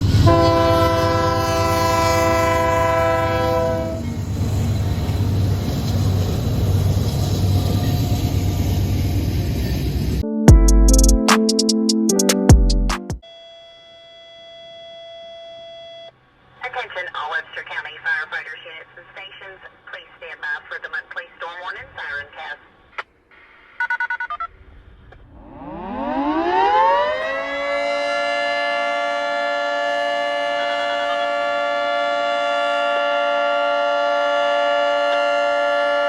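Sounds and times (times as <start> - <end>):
storm warning siren: 0.0 - 5.4, 25.3 - 36.0.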